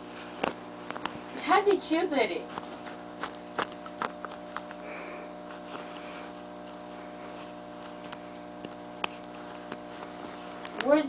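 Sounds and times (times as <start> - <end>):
electrical hum: 0.0 - 11.0.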